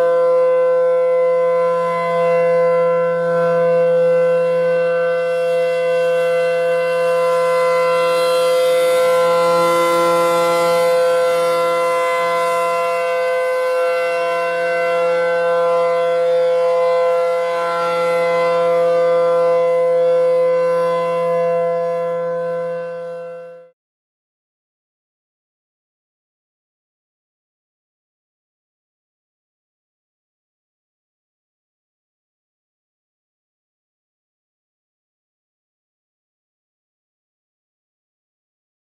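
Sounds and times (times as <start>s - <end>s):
tornado warning siren steady tone: 0.0s - 23.8s.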